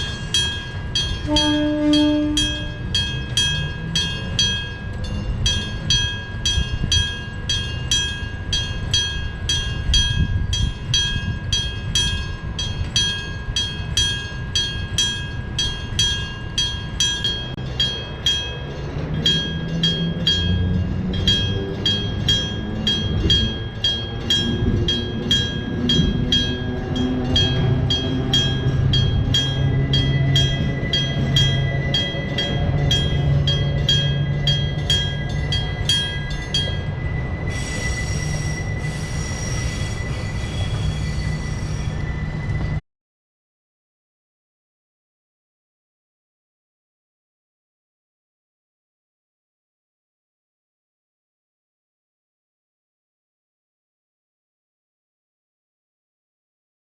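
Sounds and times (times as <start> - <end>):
crossing bell ringing: 0.0 - 42.8
train motor whine: 19.2 - 42.8.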